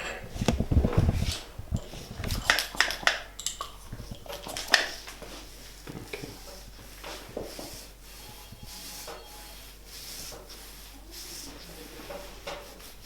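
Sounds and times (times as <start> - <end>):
hands rubbing skin swishing: 3.9 - 13.0.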